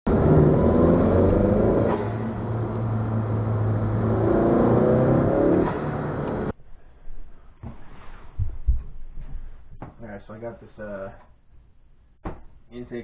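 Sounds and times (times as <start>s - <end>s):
car engine accelerating: 0.0s - 6.5s
intake air rushing: 0.1s - 6.5s.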